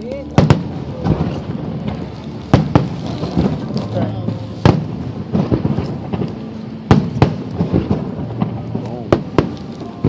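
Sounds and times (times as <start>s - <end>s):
crowd chatter: 0.0s - 10.0s
fireworks booming: 0.0s - 10.0s
fireworks popping: 0.0s - 10.0s.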